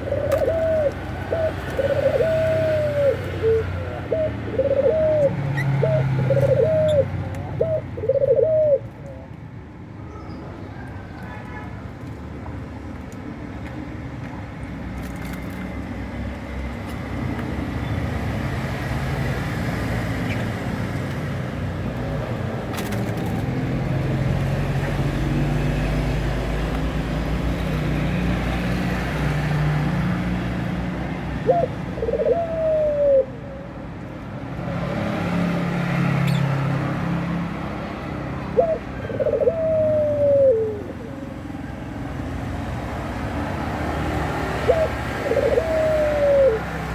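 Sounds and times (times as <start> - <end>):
dove cooing: 0.0 - 9.2, 31.4 - 33.8, 38.5 - 41.8, 44.4 - 46.9.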